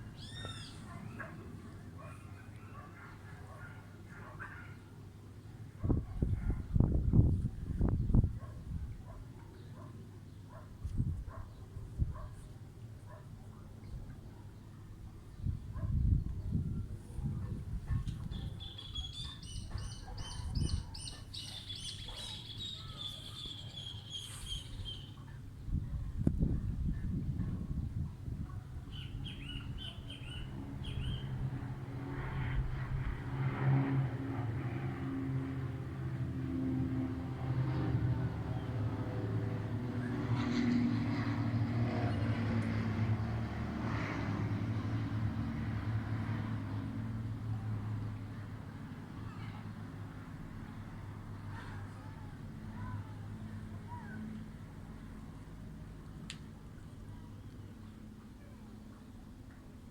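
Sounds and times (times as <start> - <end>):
small bird singing: 0.2 - 0.9, 18.2 - 25.2, 28.9 - 31.3.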